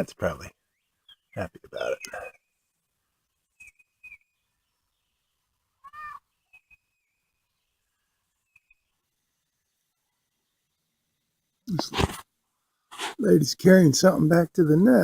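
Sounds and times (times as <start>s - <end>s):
bird chirps: 0.6s - 10.8s.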